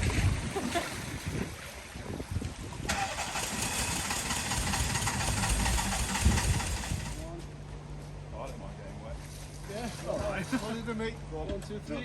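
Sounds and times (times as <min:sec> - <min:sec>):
steady hiss of water or wind: 0:00.0 - 0:07.3
vehicle engine running at low revs: 0:03.2 - 0:07.4.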